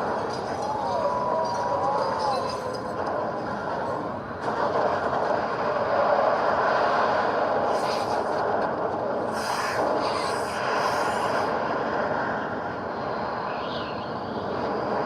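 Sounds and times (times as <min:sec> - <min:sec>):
tornado wind rumble: 0:00.0 - 0:15.0
high-pitched hissing noise: 0:09.3 - 0:11.6.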